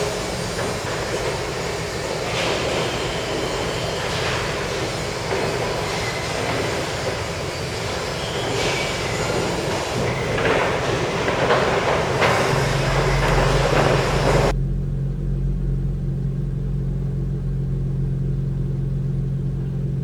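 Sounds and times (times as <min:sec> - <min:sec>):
low engine drone: 0:00.0 - 0:08.5, 0:09.4 - 0:20.0
machinery grinding and clattering: 0:00.0 - 0:14.5.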